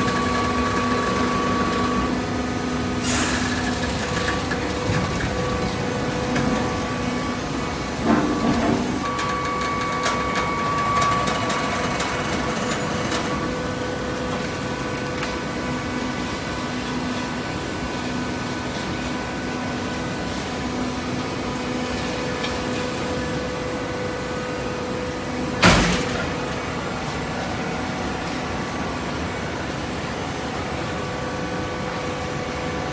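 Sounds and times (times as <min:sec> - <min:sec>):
hydraulic baler humming drone: 0:00.0 - 0:32.9
loud metallic clank: 0:25.6 - 0:26.9.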